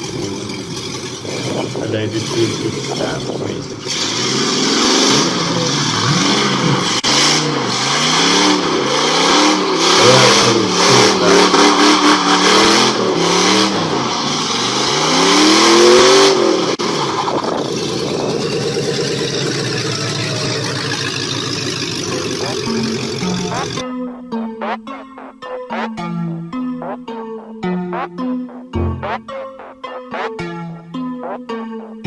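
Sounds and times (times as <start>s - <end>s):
truck engine revving loudly: 0.0s - 23.8s.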